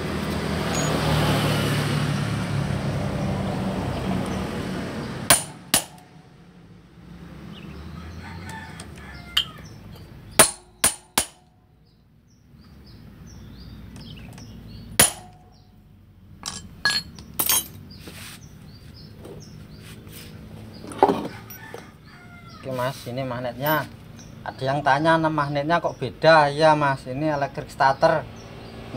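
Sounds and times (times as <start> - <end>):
metallic clinks of tools: 0.7 - 1.0, 16.4 - 17.8.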